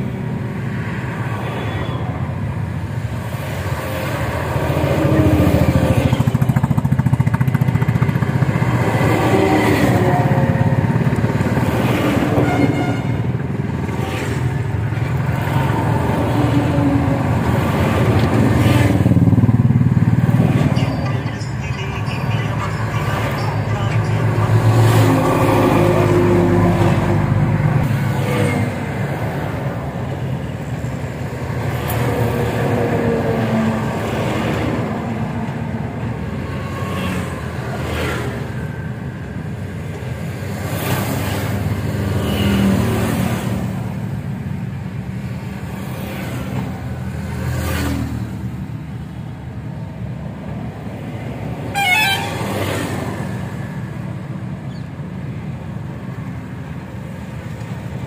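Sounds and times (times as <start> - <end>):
vehicle engines in traffic: 0.0 - 58.0
car horns tooting: 12.3 - 13.3, 51.7 - 52.6.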